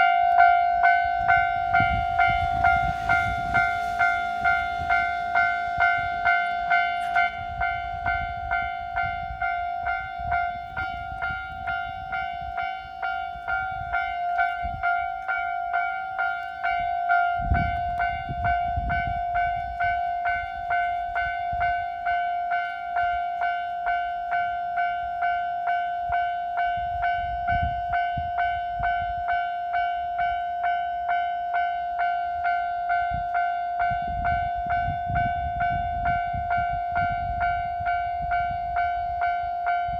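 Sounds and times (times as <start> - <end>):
level-crossing alarm bell: 0.0 - 39.9
trains rumbling past: 0.0 - 39.9.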